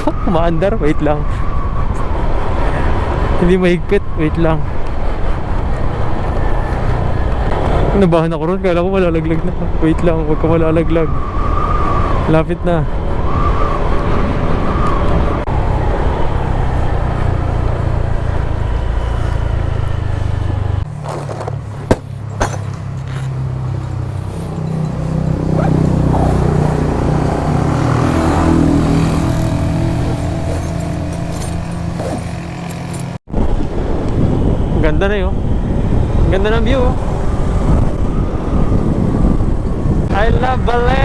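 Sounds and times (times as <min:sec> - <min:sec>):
wind rumble on microphone: 0:00.0 - 0:21.0, 0:21.6 - 0:41.0
scooter engine: 0:15.4 - 0:33.2
sharp knocks: 0:21.0 - 0:22.9.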